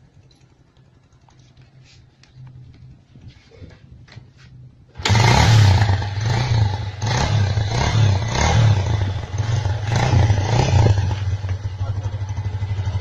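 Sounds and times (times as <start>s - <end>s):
motorcycle engine revving: 4.9s - 13.0s.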